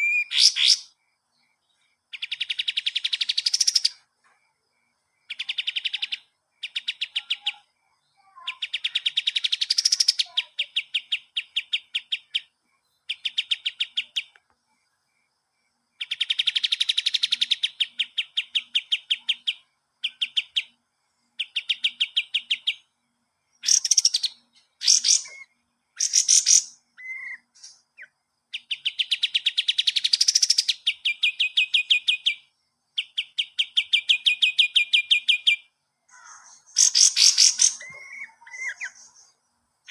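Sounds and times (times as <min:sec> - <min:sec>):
songbird rattling trill: 0:00.0 - 0:00.9, 0:02.1 - 0:04.0, 0:05.3 - 0:12.5, 0:13.1 - 0:14.4, 0:16.0 - 0:22.9, 0:23.6 - 0:39.9.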